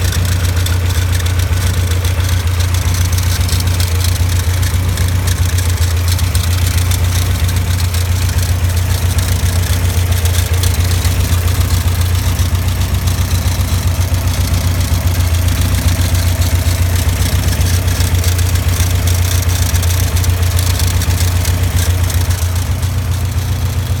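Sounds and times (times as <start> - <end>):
engine idling: 0.0 - 24.0.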